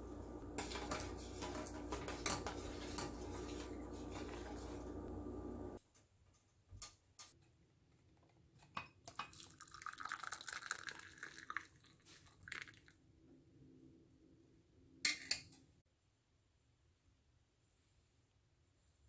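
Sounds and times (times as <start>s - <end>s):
liquid pouring: 9.1s - 13.0s
liquid trickling: 9.3s - 12.9s.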